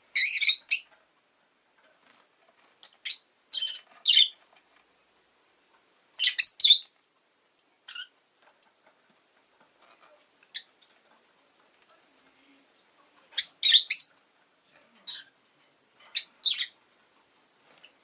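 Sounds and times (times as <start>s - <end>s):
bird high-pitched chirps: 0.1s - 0.9s, 2.8s - 4.4s, 6.2s - 6.9s, 7.8s - 8.2s, 13.4s - 14.2s, 16.1s - 16.8s.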